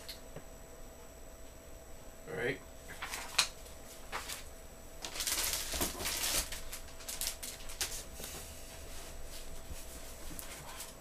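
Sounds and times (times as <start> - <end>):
packaging rustling and scraping: 3.0 - 11.0.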